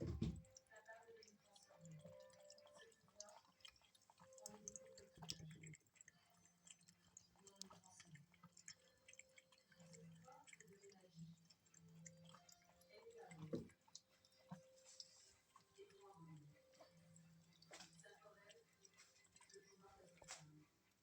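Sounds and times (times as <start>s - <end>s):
running tap: 0.0s - 15.6s
cat lapping water: 0.0s - 21.0s.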